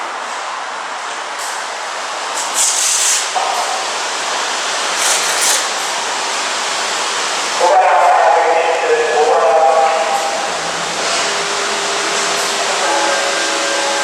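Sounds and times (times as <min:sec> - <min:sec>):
sharp bursts of hiss: 0:02.4 - 0:03.3.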